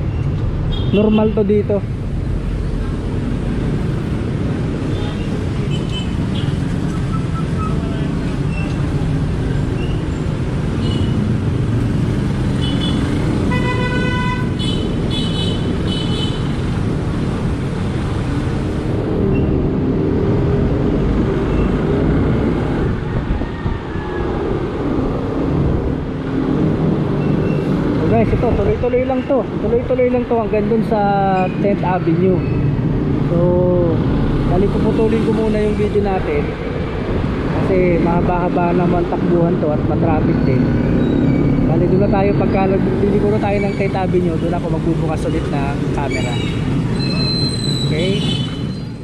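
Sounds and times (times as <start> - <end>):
motorcycle engine and road noise: 0.0 - 49.0
vehicle horn honking: 12.6 - 16.5.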